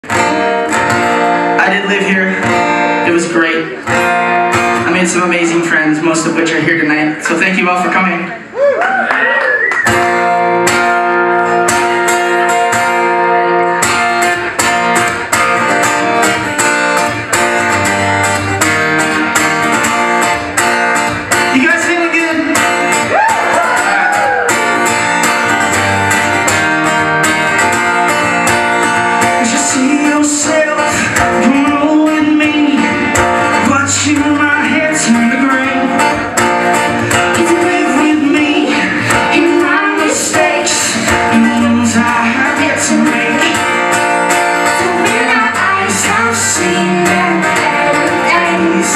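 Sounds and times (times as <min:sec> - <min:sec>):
strummed acoustic guitar: 0:00.0 - 0:08.5, 0:09.8 - 0:48.9.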